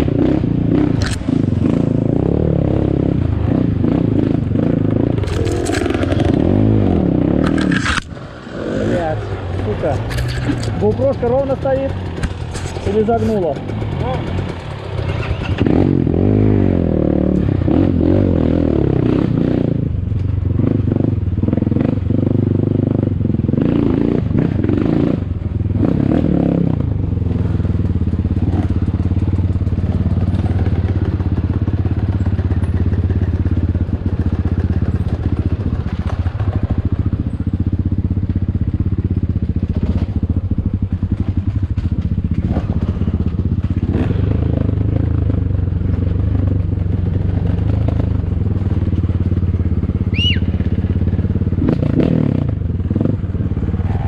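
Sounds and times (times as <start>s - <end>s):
motorcycle engine revving: 0.0s - 54.0s
motorcycle clattering over rough ground: 4.4s - 15.9s, 26.9s - 53.7s.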